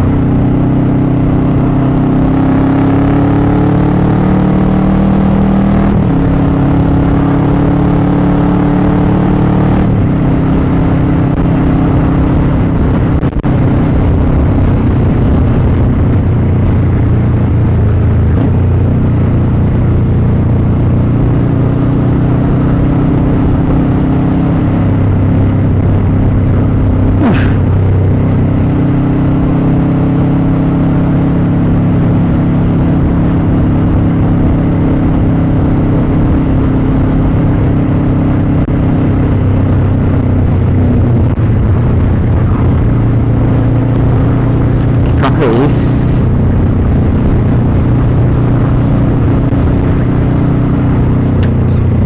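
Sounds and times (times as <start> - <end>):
brief sharp noise: 27.2 - 27.7, 51.4 - 52.0
motorcycle engine running: 45.8 - 52.0.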